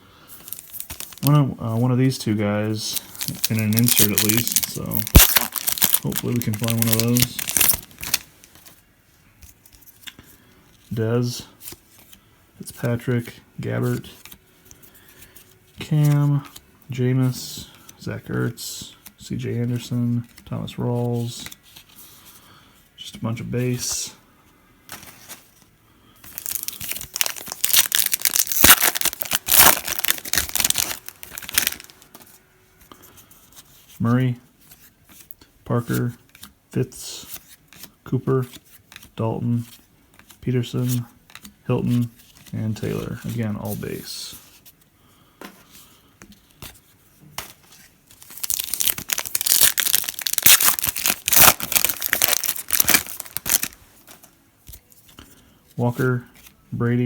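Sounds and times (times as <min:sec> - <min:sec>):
wrapper crinkling and tearing: 0:00.5 - 0:01.4, 0:02.9 - 0:08.7, 0:26.2 - 0:32.2, 0:48.1 - 0:53.8.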